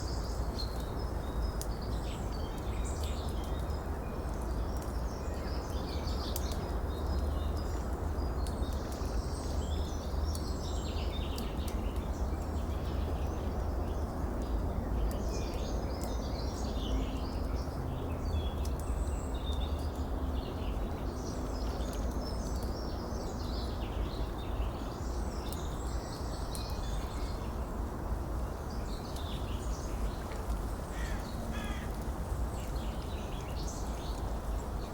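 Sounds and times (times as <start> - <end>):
small birds chirping: 28.5 - 34.9.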